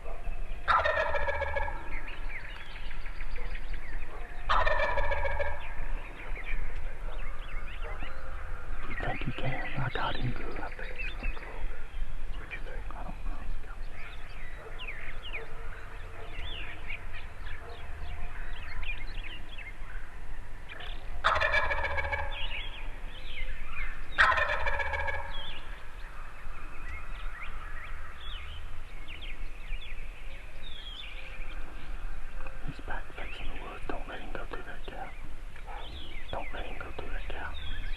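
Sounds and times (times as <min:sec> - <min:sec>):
songbirds chirping: 0:00.0 - 0:37.9
turkey gobbling: 0:00.6 - 0:02.2, 0:04.5 - 0:05.8, 0:21.2 - 0:22.8, 0:24.2 - 0:25.7.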